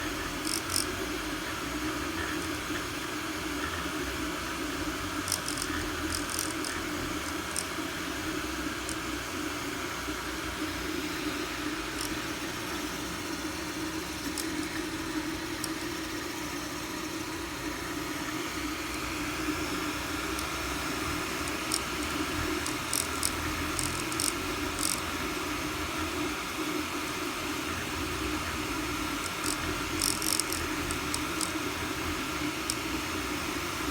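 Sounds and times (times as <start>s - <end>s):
printer humming: 0.0s - 33.9s.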